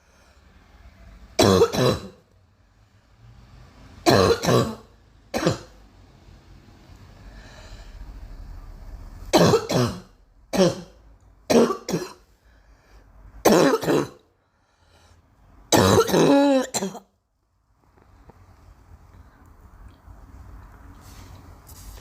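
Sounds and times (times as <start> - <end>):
girl coughing: 1.4 - 2.2, 4.1 - 5.8, 9.4 - 12.2, 13.4 - 14.2, 15.7 - 17.1.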